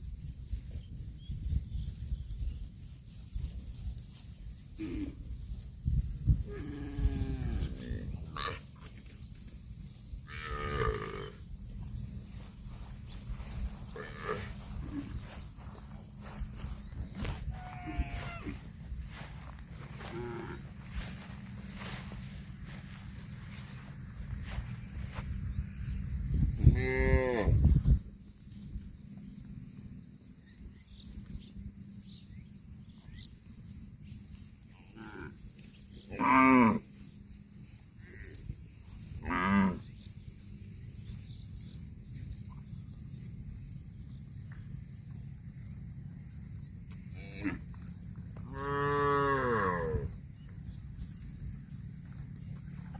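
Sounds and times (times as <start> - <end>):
cattle mooing: 10.3 - 11.4, 13.9 - 15.2, 17.2 - 18.7, 20.0 - 20.9, 48.5 - 50.1.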